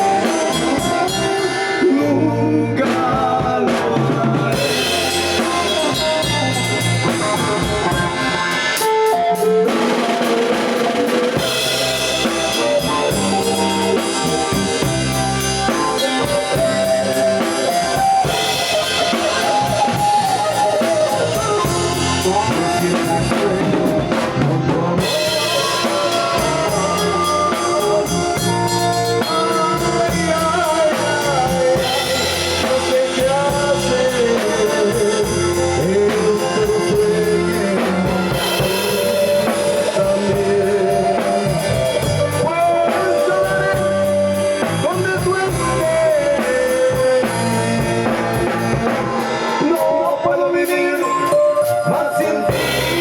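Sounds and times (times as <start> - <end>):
drum kit beat: 0.0 - 2.2, 2.8 - 53.0
guitar: 0.0 - 53.0
melody line: 4.5 - 10.5, 11.3 - 44.6, 50.7 - 53.0.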